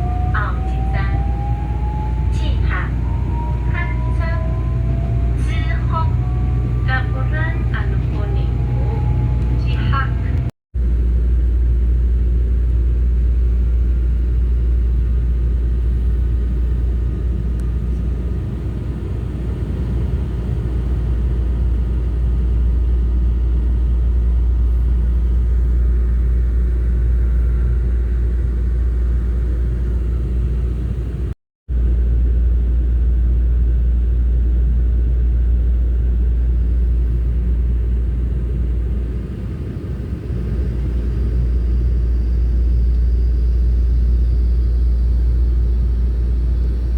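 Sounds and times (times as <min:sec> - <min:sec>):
train rumbling in motion: 0:00.0 - 0:46.9
faint steady whine: 0:35.1 - 0:46.9.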